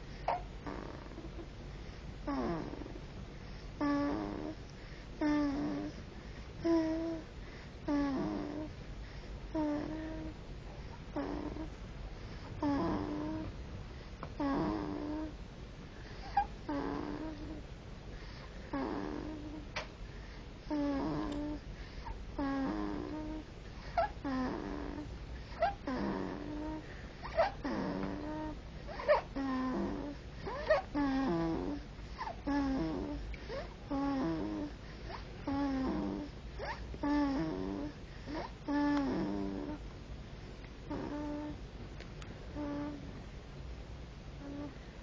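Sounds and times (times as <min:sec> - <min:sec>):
person snoring: 0:02.3 - 0:03.0, 0:07.9 - 0:08.7, 0:18.7 - 0:19.6, 0:25.6 - 0:26.8, 0:27.4 - 0:31.8, 0:35.4 - 0:36.3, 0:37.0 - 0:39.8, 0:42.6 - 0:43.0.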